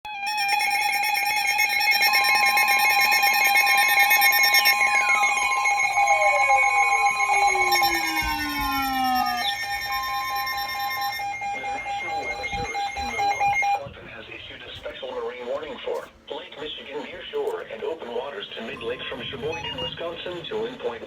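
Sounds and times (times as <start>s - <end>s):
steady electronic alarm tone: 0.1s - 13.9s, 18.6s - 20.4s
whistles sliding down in pitch: 0.3s - 13.8s
warbling tones: 2.3s - 13.9s.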